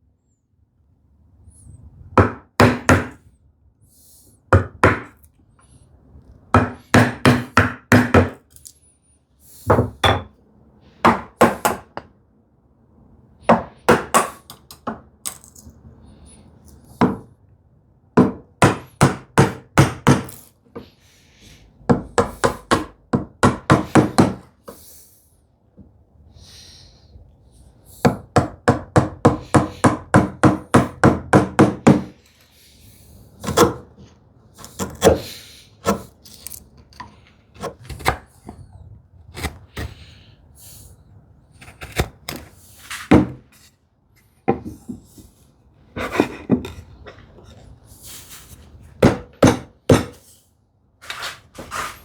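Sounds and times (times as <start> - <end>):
mallet striking chisel into wood: 2.2 - 3.2, 6.6 - 8.4, 11.1 - 12.0, 13.5 - 15.0, 18.2 - 20.3, 21.9 - 24.4, 28.0 - 32.1, 49.0 - 50.2.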